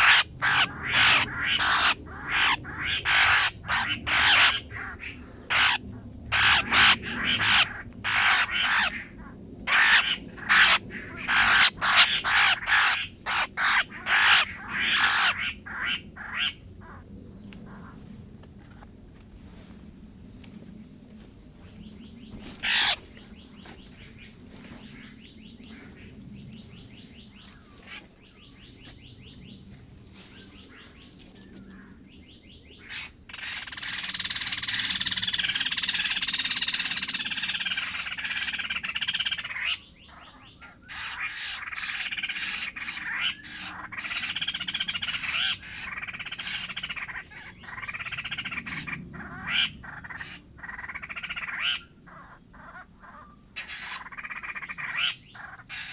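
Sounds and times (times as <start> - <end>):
bird calling: 0.0 - 17.0, 22.6 - 23.0, 32.8 - 55.9.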